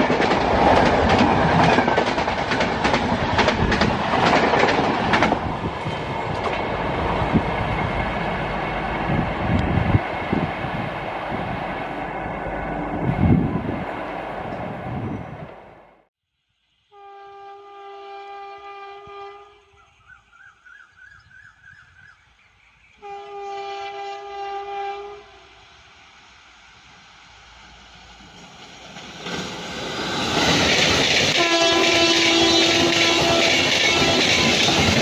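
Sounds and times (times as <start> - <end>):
train rumbling and clattering past: 0.0 - 16.1, 23.1 - 35.0
locomotive horn blasts: 16.9 - 19.8, 23.0 - 25.6, 31.4 - 34.6.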